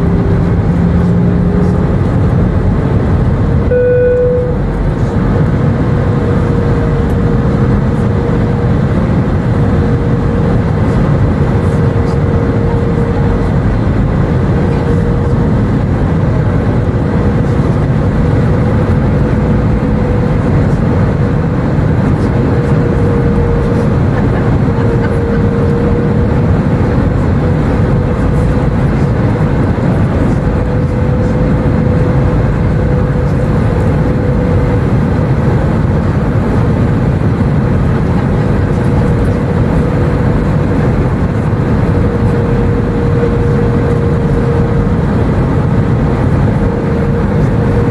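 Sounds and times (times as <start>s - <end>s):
jet engine rush in cabin: 0.0s - 47.9s
steady hum: 0.0s - 47.9s.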